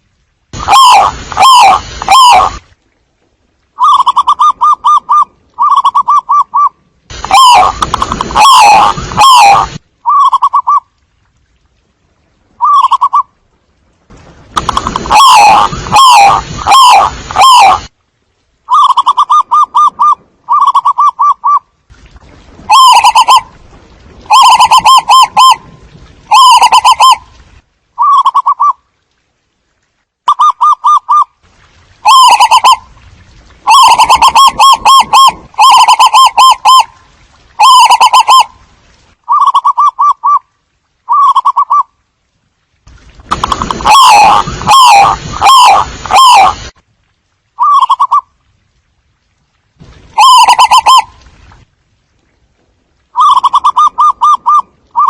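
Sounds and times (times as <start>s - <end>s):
doves cooing: 7.3s - 10.8s, 50.2s - 51.1s.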